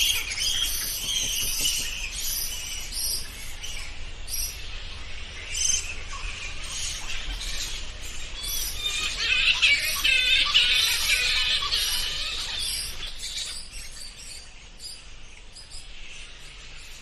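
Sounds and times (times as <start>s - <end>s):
bats squeaking: 0.0s - 3.4s.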